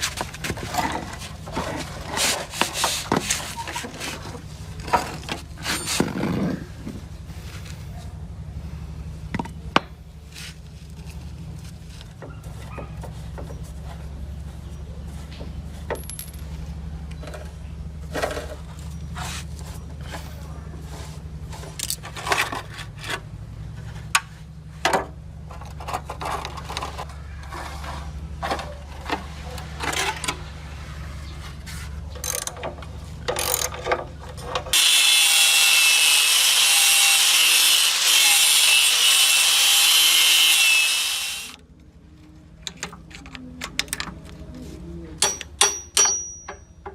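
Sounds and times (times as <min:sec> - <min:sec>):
metal parts and tools clinking: 0:15.9 - 0:16.6, 0:21.6 - 0:23.2, 0:32.1 - 0:34.7, 0:45.2 - 0:46.9
loud abrasive rasping: 0:34.7 - 0:41.6.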